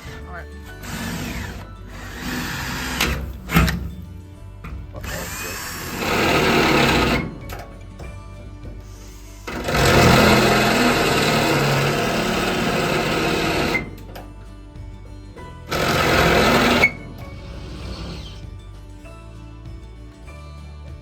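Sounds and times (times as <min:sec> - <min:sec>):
power tool boring into steel: 0:00.0 - 0:03.8, 0:05.0 - 0:07.6, 0:09.3 - 0:14.2, 0:15.7 - 0:18.6
background music: 0:00.0 - 0:21.0.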